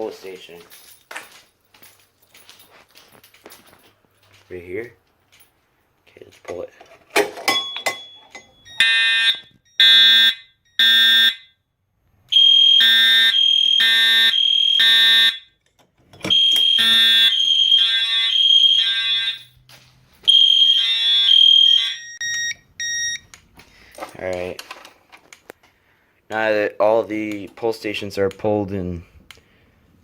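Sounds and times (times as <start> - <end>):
fire alarm horn blasts: 8.8 - 11.6, 12.3 - 15.6, 16.3 - 19.6, 20.3 - 23.2
high-pitched alarm tone: 16.3 - 19.6, 20.3 - 23.2.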